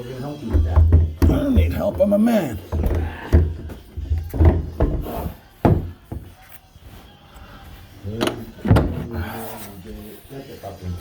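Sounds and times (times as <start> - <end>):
wooden doors knocking and thumping: 0.4 - 6.3, 8.6 - 9.1
wood rubbing: 0.4 - 6.4.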